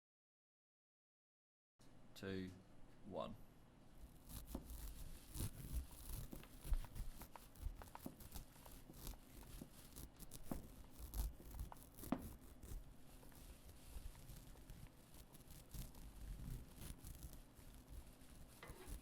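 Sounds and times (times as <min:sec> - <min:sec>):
crackles clicks and rustles: 0:04.2 - 0:19.0.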